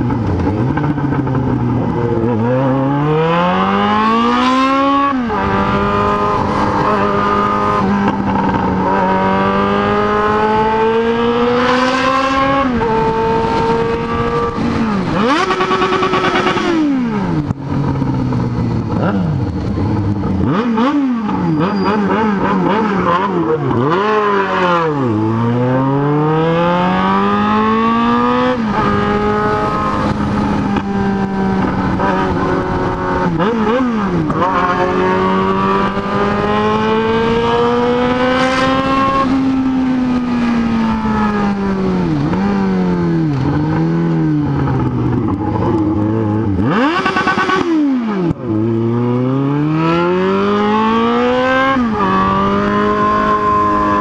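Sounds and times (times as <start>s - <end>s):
motorcycle engine revving: 0.0s - 54.0s.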